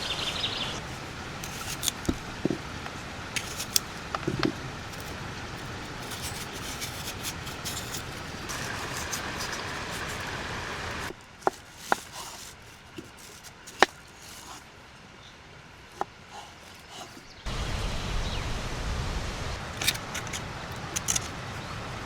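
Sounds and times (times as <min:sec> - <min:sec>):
steady rushing noise: 0:17.4 - 0:22.0.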